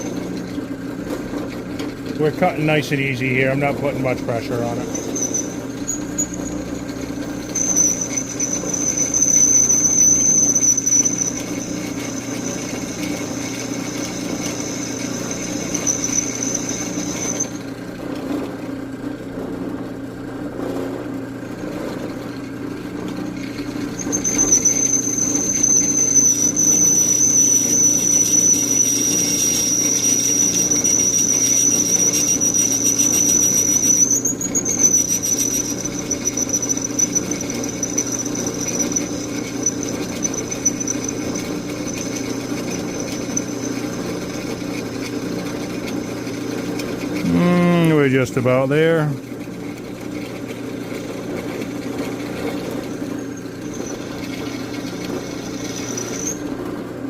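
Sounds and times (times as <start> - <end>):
electric drill squealing in steel: 0.0 - 1.5, 2.2 - 17.8, 23.1 - 56.6.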